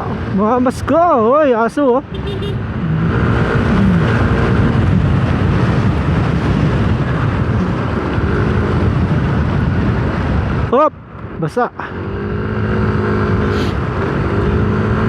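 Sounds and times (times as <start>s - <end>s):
wind rumble on microphone: 2.0s - 11.4s.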